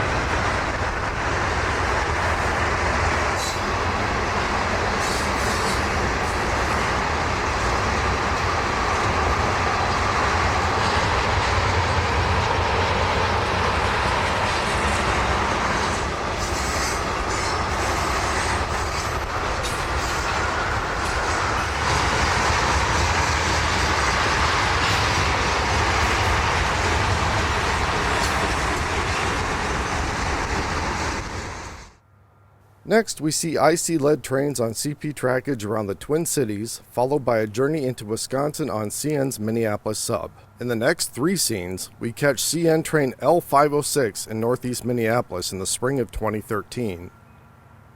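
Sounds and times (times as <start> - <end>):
freight train rumbling: 0.0 - 32.0.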